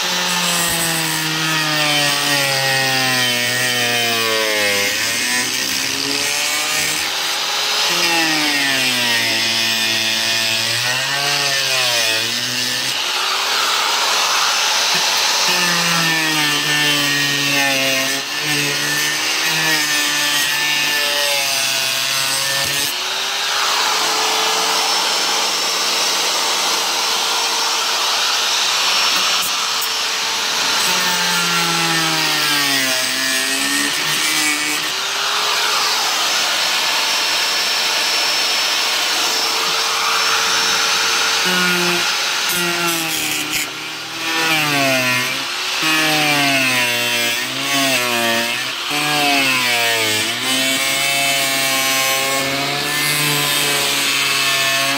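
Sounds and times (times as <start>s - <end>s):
power tool cutting panel: 0.0s - 54.9s.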